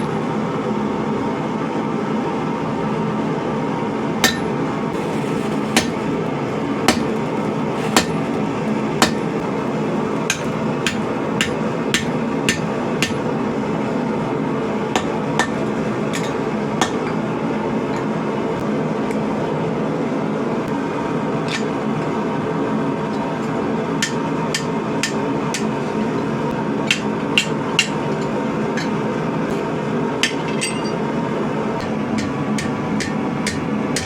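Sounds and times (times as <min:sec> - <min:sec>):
hammer striking steel on anvil: 0:04.2 - 0:06.1, 0:06.9 - 0:08.4, 0:09.0 - 0:09.6, 0:10.3 - 0:13.3, 0:24.0 - 0:25.8, 0:26.9 - 0:29.0, 0:31.8 - 0:34.0.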